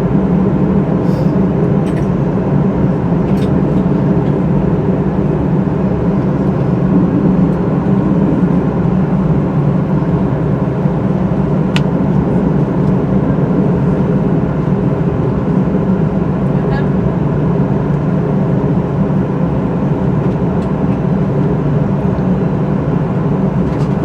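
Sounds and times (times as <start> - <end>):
air-conditioning hum: 0.0 - 24.0
jet engines idling: 0.0 - 24.0.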